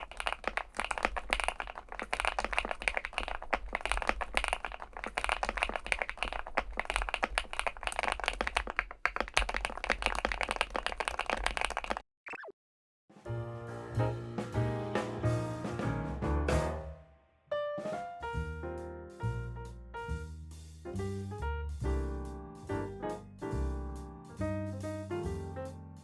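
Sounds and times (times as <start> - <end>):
mechanical keyboard typing: 0.0 - 12.0.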